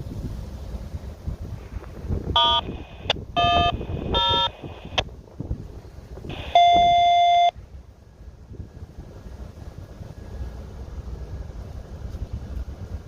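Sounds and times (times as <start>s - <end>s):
wind noise on microphone: 0.0s - 13.0s
locomotive air horn blasts: 3.4s - 4.6s.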